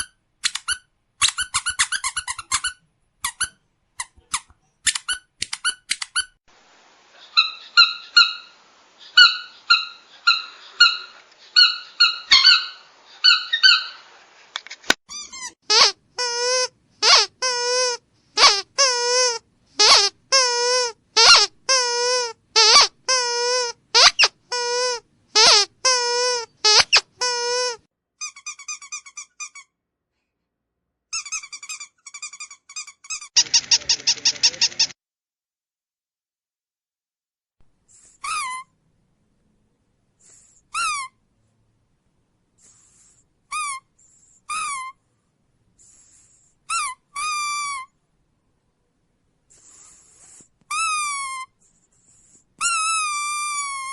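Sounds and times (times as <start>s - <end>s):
squeaky dog toy squeaks: 0.0s - 6.4s, 7.4s - 8.5s, 9.1s - 14.0s, 15.1s - 29.8s, 31.1s - 34.9s, 37.9s - 38.8s, 40.3s - 41.2s, 42.7s - 45.0s, 46.6s - 48.0s, 50.3s - 53.9s
harsh rapid pulsing squeak: 31.2s - 35.0s.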